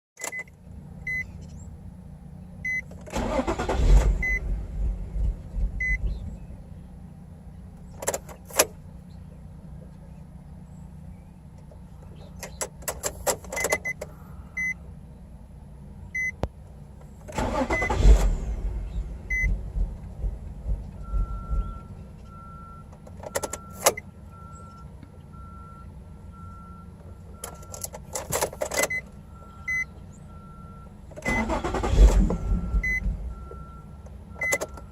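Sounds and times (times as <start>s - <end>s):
car engine cranking: 2.6s - 6.8s, 7.8s - 9.2s, 11.6s - 14.2s, 16.2s - 25.5s, 26.4s - 34.9s
electronic beep: 5.8s - 6.1s, 19.3s - 19.6s, 28.8s - 31.5s, 32.3s - 34.7s.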